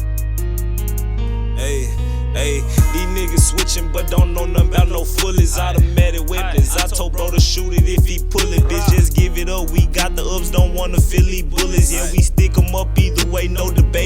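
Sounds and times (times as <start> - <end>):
hip hop beat with deep bass: 0.0 - 14.0
fast hi-hat ticks: 2.8 - 14.0
short vocal phrases: 11.4 - 14.0.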